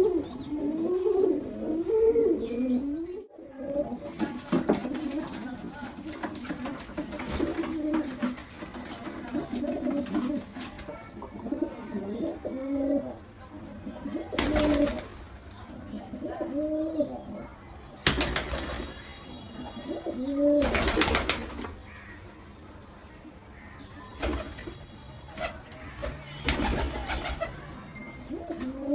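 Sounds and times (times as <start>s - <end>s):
pigeon cooing: 0.0s - 4.1s, 11.4s - 13.2s, 16.0s - 17.6s, 19.7s - 21.0s, 26.9s - 28.9s.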